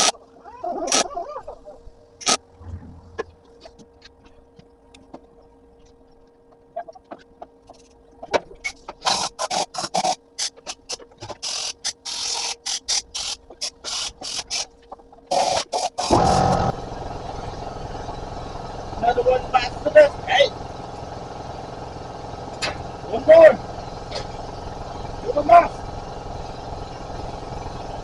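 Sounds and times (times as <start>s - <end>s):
steady mechanical noise: 0.0s - 28.0s.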